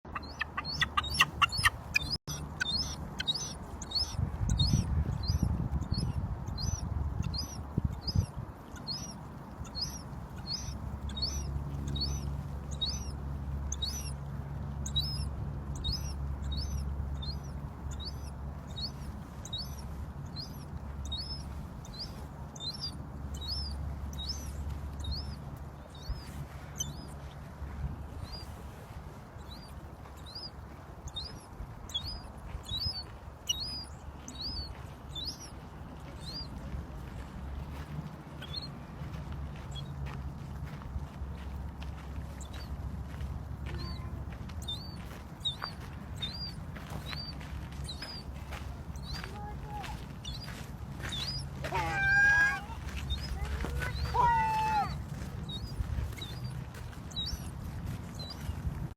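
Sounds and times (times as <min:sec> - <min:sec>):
gull chick peeping: 0:00.0 - 0:27.3, 0:28.1 - 0:58.9.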